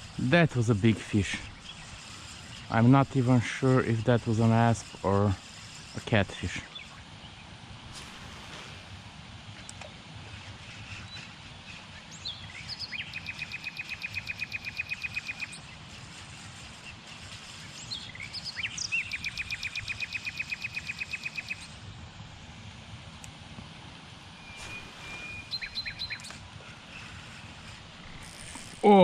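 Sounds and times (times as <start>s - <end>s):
small bird singing trills: 10.3s - 15.9s, 16.7s - 21.8s, 24.4s - 26.4s.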